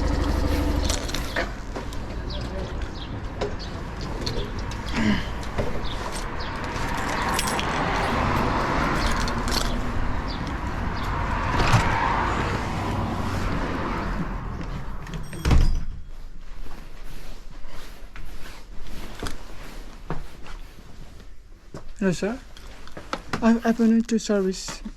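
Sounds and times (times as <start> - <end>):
vehicle rumble: 0.0 - 16.2
light clicks and jangles: 5.8 - 10.4.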